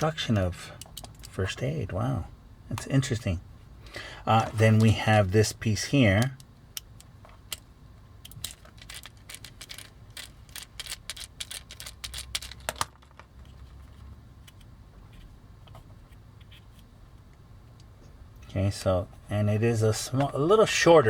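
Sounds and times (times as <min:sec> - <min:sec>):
clicks of plastic toy parts: 0:08.2 - 0:13.3.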